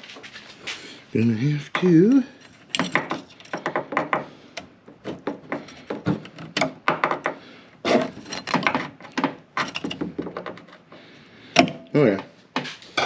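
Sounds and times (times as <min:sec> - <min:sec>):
tools knocking on car body parts: 0:02.8 - 0:04.3, 0:05.0 - 0:09.4.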